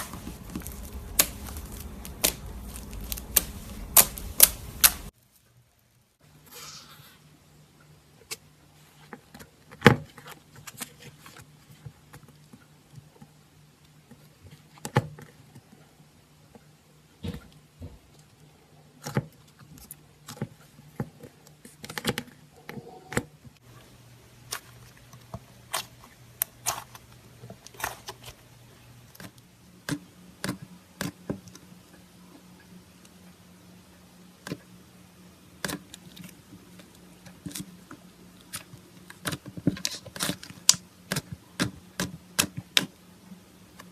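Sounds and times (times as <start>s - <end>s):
faint low hum: 0.0s - 9.1s
slime sticky clicks and pops: 0.5s - 5.1s.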